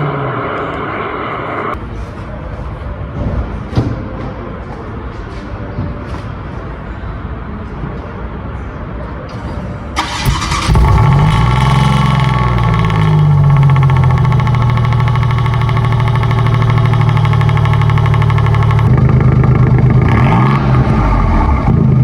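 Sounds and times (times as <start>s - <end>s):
starter cranking: 10.0s - 18.9s
car engine revving and idling: 10.0s - 22.0s.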